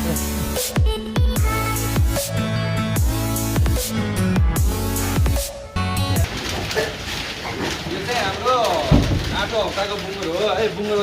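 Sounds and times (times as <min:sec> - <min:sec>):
dubstep electronic music: 0:00.0 - 0:06.2.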